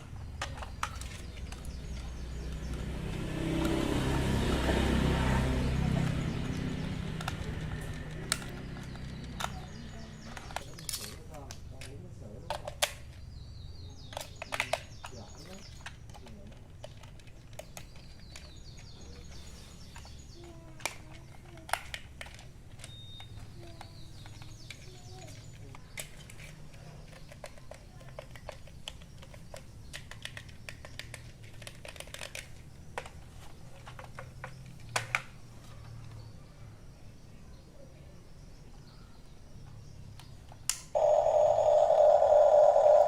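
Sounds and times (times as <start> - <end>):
hands handling plastic toy: 7.2 - 13.2, 14.1 - 36.2
faint chirps: 35.7 - 43.0.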